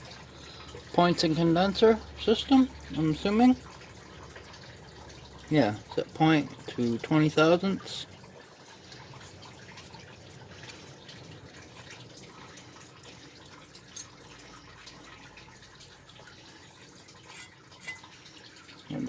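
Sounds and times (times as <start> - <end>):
light clicks of tools and parts: 12.4 - 15.9.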